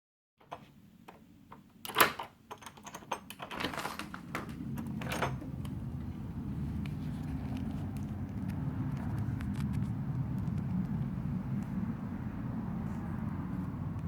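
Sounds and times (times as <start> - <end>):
clicks and knocks: 0.4 - 5.8
low rumble: 4.1 - 14.0.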